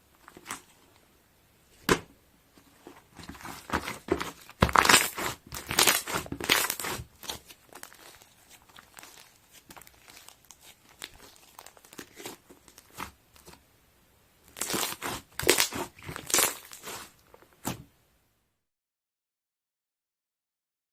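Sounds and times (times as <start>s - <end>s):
crinkling and rustling handling noise: 0.0s - 1.1s, 1.7s - 13.6s, 14.5s - 17.9s.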